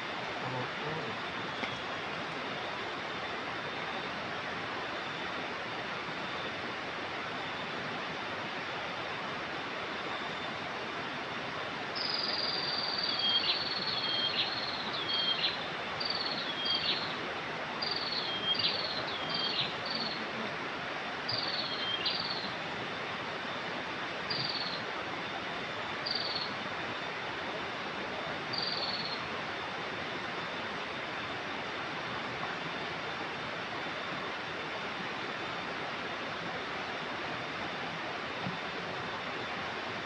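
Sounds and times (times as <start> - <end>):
flowing river water: 0.0 - 40.0
bird whistling calls: 12.0 - 17.1, 17.9 - 20.2, 21.3 - 22.5.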